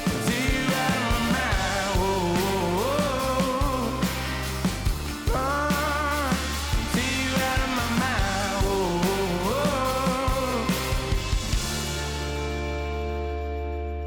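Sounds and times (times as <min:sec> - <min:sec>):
person singing: 0:00.0 - 0:04.2, 0:05.3 - 0:11.2
drum beats: 0:00.0 - 0:12.6
bass line: 0:00.0 - 0:14.0.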